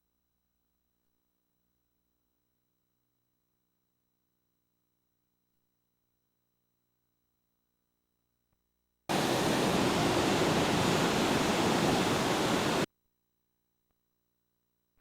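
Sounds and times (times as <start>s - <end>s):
loud static hiss: 9.1s - 12.9s.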